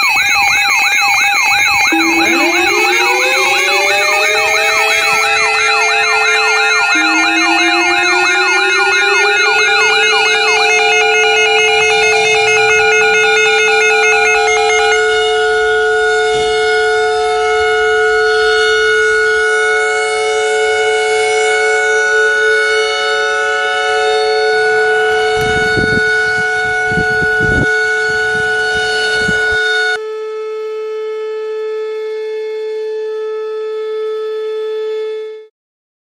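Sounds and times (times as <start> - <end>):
weather radio alarm tone: 0.0 - 16.2.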